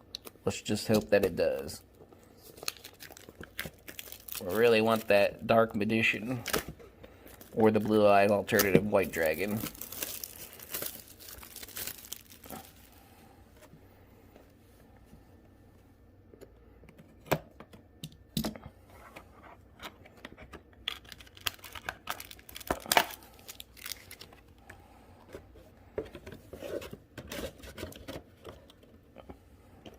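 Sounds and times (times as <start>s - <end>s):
wrapping ripping: 2.4s - 5.2s, 7.4s - 13.0s, 20.9s - 24.4s
foil and plastic crinkling: 2.4s - 13.1s, 20.9s - 24.5s.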